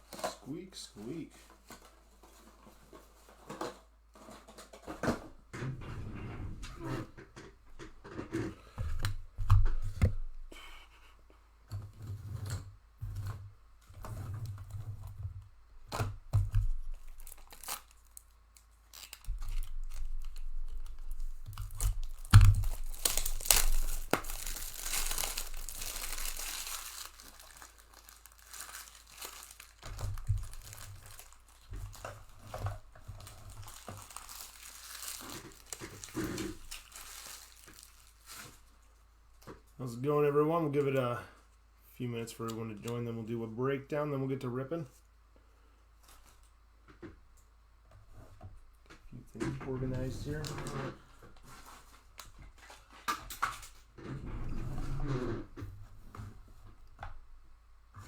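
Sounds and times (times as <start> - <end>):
plastic wrapping crinkling: 15.9 - 39.0, 49.9 - 50.8.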